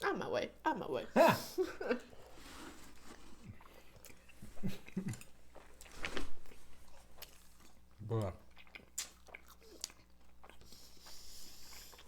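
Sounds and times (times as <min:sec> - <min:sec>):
chewing crispy food: 0:02.9 - 0:12.0
wet mouth sounds: 0:08.2 - 0:12.0.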